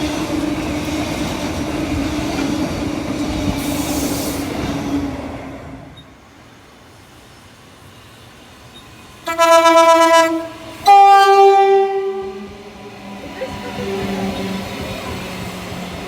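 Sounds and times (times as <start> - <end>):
train running past: 0.0 - 16.0
train horn blast: 9.2 - 12.6.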